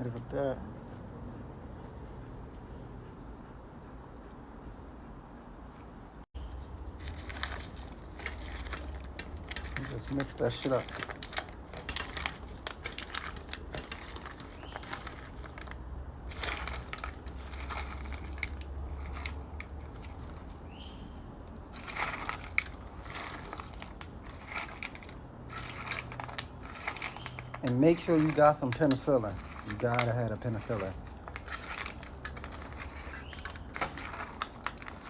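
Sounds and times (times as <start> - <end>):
dog kibble crunching and scraping: 6.4 - 35.0.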